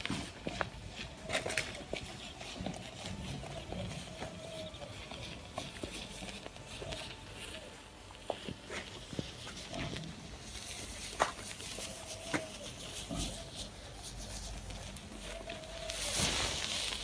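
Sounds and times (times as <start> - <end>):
matches flaring with crackles: 13.6 - 17.0
low hiss: 13.9 - 17.0.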